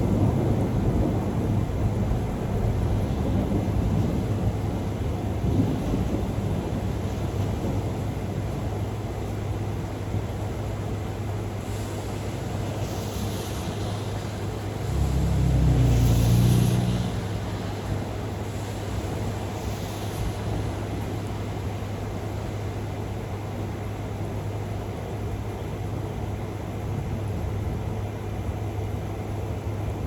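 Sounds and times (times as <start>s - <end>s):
thunder rumbling: 0.0s - 23.1s
wind: 0.0s - 30.0s.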